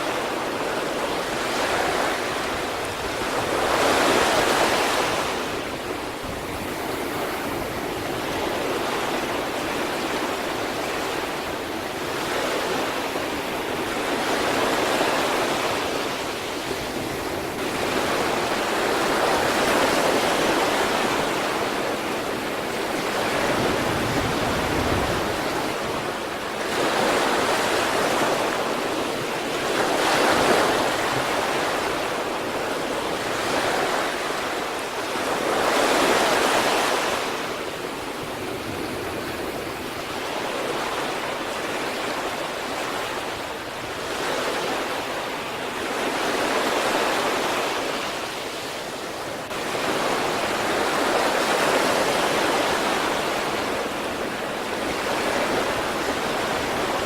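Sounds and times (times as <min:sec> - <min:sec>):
sea waves breaking on shore: 0:00.0 - 0:57.0
wind on microphone: 0:00.0 - 0:57.0.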